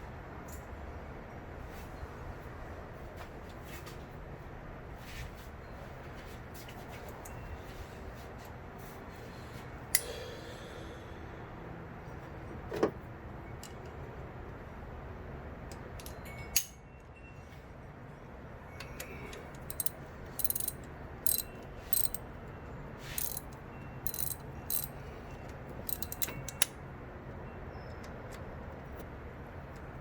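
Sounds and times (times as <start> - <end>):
ratchet wrench clicking: 19.6 - 22.2, 23.1 - 25.0, 25.8 - 26.7
metal clinks: 19.7 - 22.2, 23.1 - 25.0, 25.9 - 26.6.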